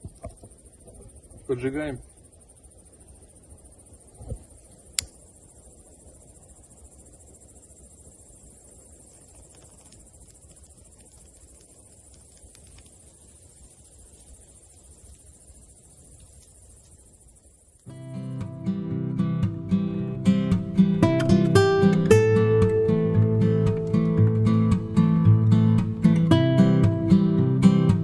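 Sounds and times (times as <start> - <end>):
faint fire crackles: 0.0 - 28.0
faint high hiss: 0.0 - 28.0
sharp click: 4.9 - 5.2.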